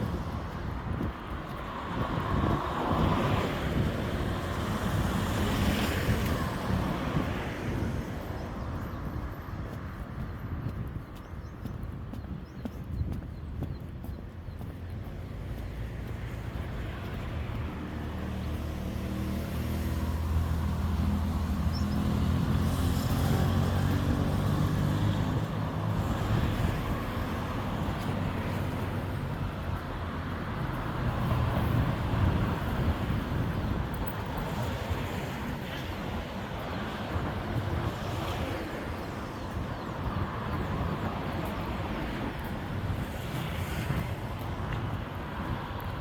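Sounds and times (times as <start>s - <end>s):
passing cars: 0.0s - 46.0s
vehicle engine hum: 12.4s - 34.6s.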